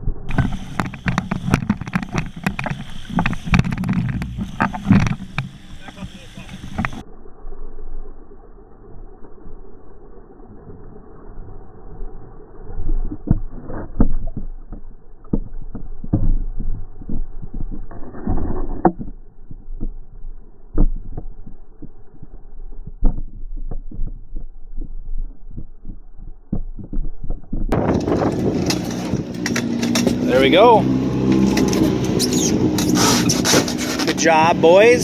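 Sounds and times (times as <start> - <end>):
low rumble: 0.0 - 35.0
muffled thumps and knocks: 0.3 - 7.0.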